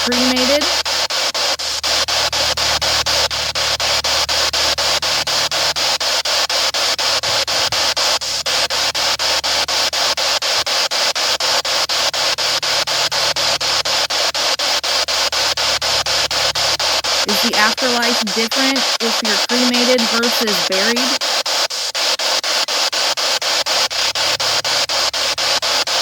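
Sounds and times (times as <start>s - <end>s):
chopped radio static: 0.0s - 26.0s.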